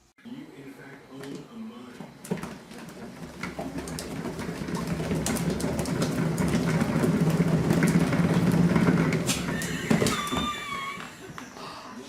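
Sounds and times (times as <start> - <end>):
motor humming: 2.0 - 11.5.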